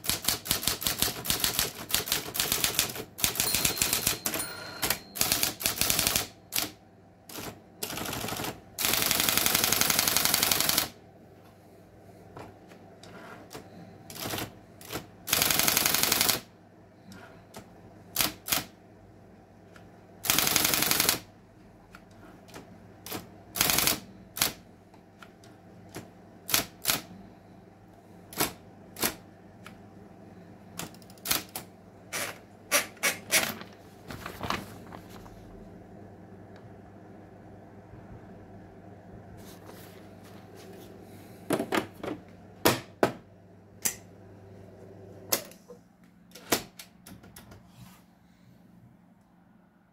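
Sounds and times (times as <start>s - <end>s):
electric typewriter key strikes: 0.0s - 10.9s, 14.1s - 16.5s, 18.1s - 18.7s, 20.2s - 21.3s, 22.5s - 24.6s, 25.9s - 27.1s, 30.8s - 33.6s
steady low hum: 0.0s - 15.5s, 16.3s - 49.9s.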